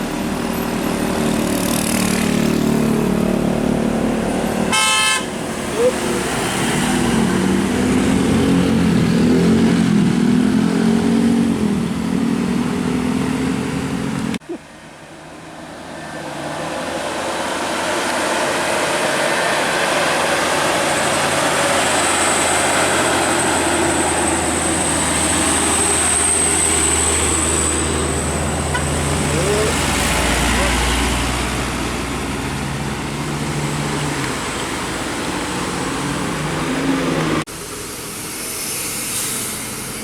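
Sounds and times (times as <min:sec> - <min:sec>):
heavy vehicle engine running: 0:00.0 - 0:40.0
traffic noise: 0:00.0 - 0:40.0.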